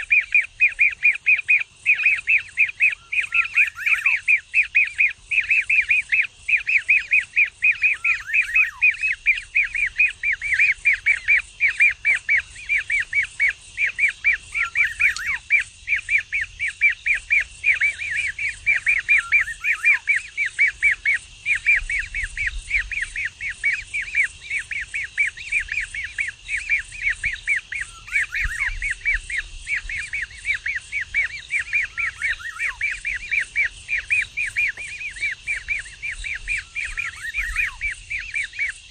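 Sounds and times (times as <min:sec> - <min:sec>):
kingfisher chick chirping: 0:00.5 - 0:04.8, 0:06.6 - 0:15.6, 0:27.5 - 0:29.2, 0:29.8 - 0:38.5.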